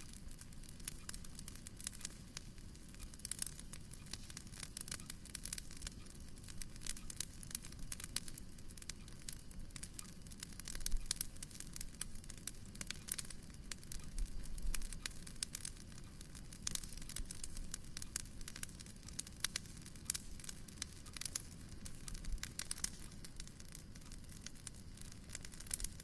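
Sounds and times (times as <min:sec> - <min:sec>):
low steady fire rumble: 0:00.0 - 0:26.0
wood fire crackling: 0:00.0 - 0:26.0.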